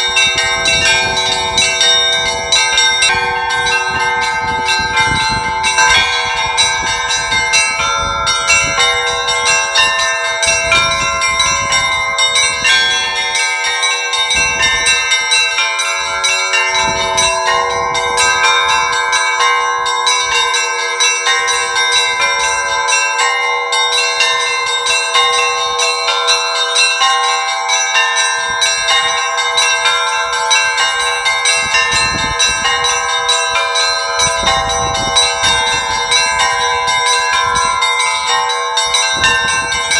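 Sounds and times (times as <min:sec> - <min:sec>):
large bells ringing: 0:00.0 - 0:39.9
small bells struck quickly: 0:00.0 - 0:39.9.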